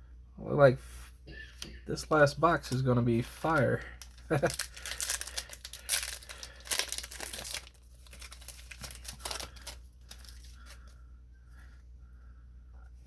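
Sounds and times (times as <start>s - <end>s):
cards rustling and clicking: 2.6s - 11.0s
foil wrapper crinkling and tearing: 3.4s - 10.9s.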